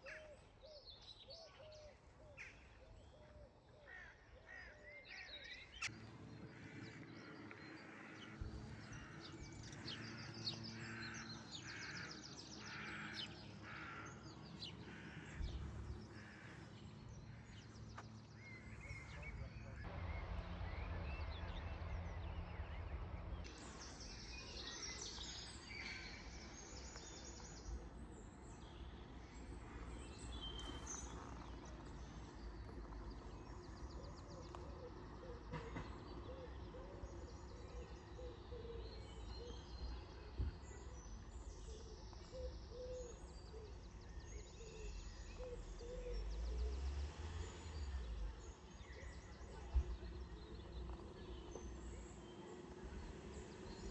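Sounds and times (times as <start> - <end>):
songbirds singing: 0.0 - 53.9
low rumble: 18.9 - 24.5.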